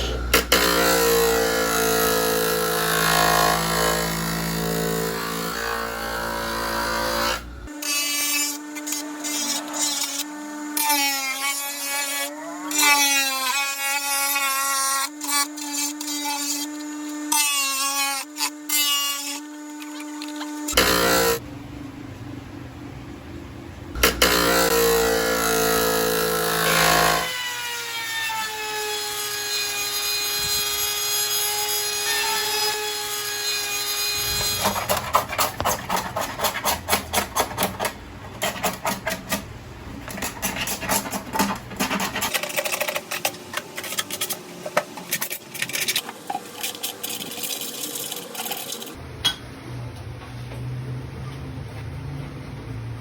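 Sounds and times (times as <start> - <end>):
grinding or scraping strokes: 40.0 - 46.1.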